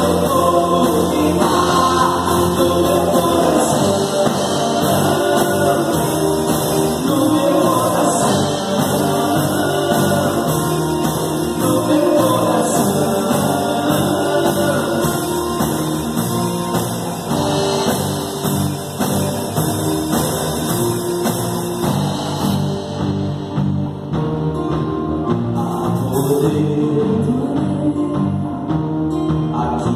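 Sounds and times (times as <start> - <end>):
sung vocals: 0.0 - 16.9, 25.5 - 29.9
drums: 0.0 - 29.9
gospel band playing: 0.0 - 29.9.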